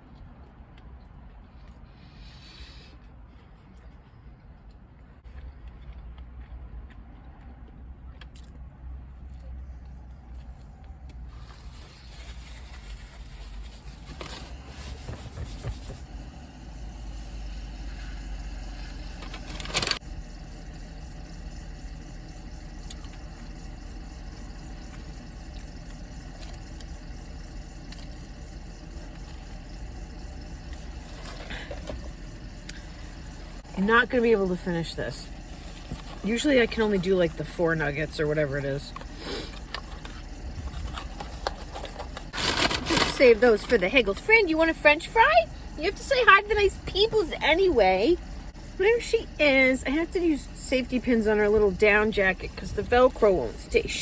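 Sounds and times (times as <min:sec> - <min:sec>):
car engine rumble inside cabin: 0:08.7 - 0:54.0.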